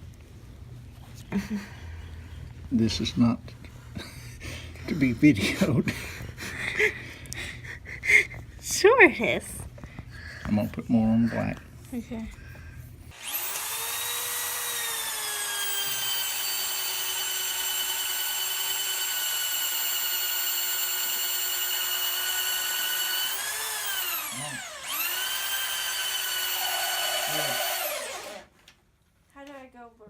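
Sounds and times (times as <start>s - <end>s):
electric drill whining: 13.1s - 28.5s.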